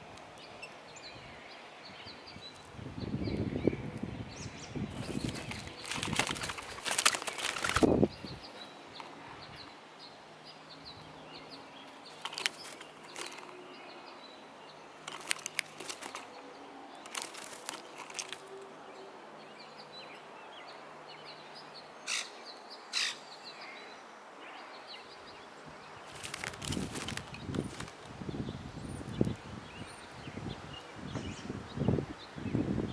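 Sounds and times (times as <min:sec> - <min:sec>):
loud bird calls: 0:00.0 - 0:32.9
small birds chirping: 0:00.0 - 0:32.9
sharp clicks or flutters: 0:04.9 - 0:08.3, 0:12.0 - 0:13.6, 0:15.0 - 0:16.4, 0:17.0 - 0:18.6, 0:26.1 - 0:28.2.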